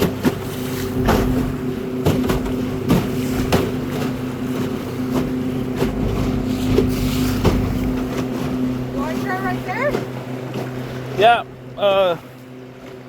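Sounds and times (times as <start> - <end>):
boat motor running: 0.0 - 13.0
short knocks: 5.1 - 8.6.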